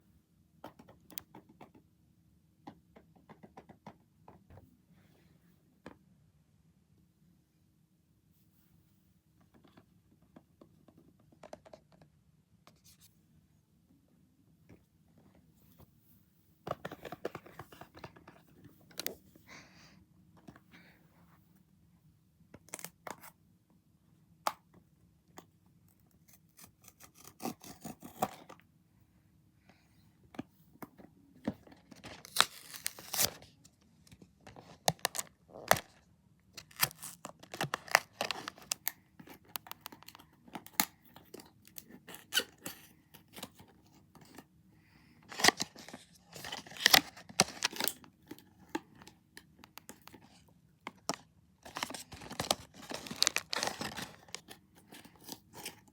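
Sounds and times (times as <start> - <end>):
packaging tearing and crinkling: 32.0 - 33.5, 36.6 - 38.9, 45.3 - 48.0, 51.1 - 55.9.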